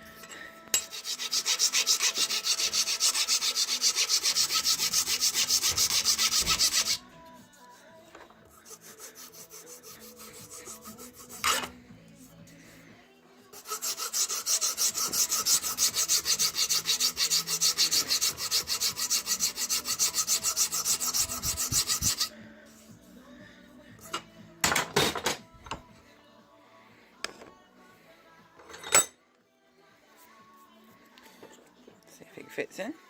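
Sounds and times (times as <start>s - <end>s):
file rasping on wood: 0.8s - 7.0s, 8.6s - 11.7s, 13.6s - 22.3s.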